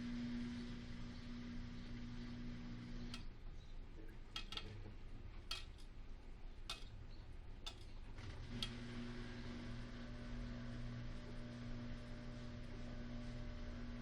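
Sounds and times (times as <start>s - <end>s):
washing machine motor hum: 0.0s - 3.4s, 6.7s - 14.0s.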